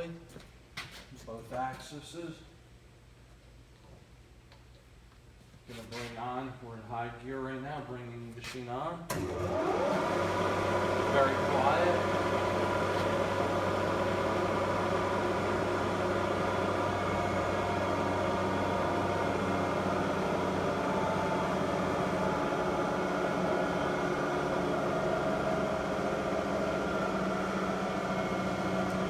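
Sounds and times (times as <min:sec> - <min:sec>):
milling machine spindle hum: 0:09.1 - 0:29.0.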